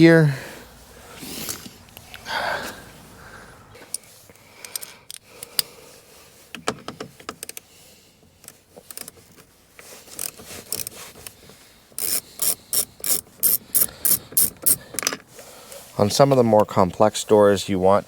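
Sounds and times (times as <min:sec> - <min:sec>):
hand tools clicking on fasteners: 0:03.8 - 0:05.8, 0:10.1 - 0:15.4
ratchet wrench clicking: 0:12.0 - 0:15.2.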